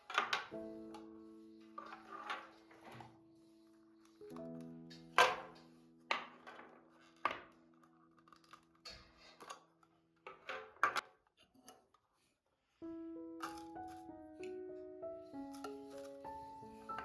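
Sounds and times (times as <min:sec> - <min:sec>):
household items clicking and knocking: 0:00.0 - 0:03.2, 0:04.1 - 0:12.1
soft instrumental background music: 0:00.0 - 0:09.5, 0:12.8 - 0:17.0.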